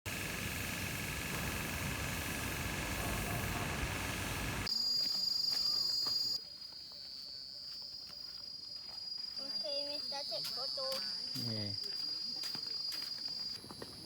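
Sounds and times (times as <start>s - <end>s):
steady noisy hiss: 0.1s - 4.7s
high-pitched insect call: 4.4s - 14.0s.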